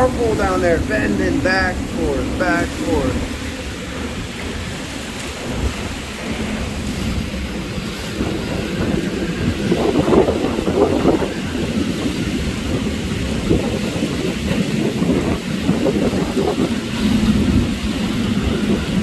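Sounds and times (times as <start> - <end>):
strong wind buffeting microphone: 0.0 - 19.0.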